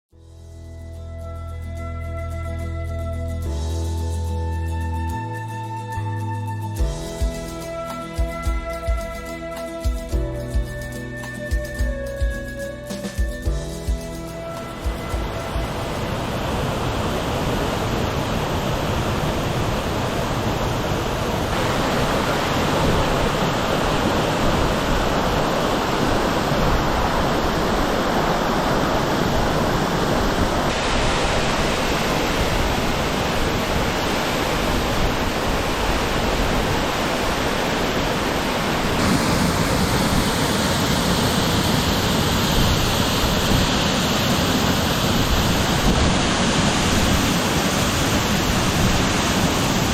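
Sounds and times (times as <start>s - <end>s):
waterfall rushing: 13.9s - 49.9s.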